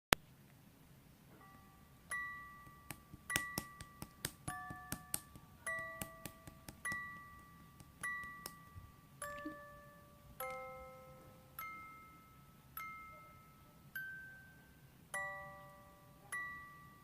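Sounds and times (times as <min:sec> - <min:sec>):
chime-like bell music: 0:01.4 - 0:03.6, 0:05.7 - 0:17.0.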